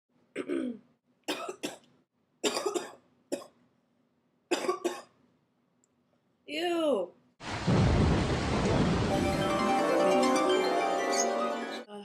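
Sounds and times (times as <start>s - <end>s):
person coughing: 0.4s - 3.5s, 4.5s - 5.2s.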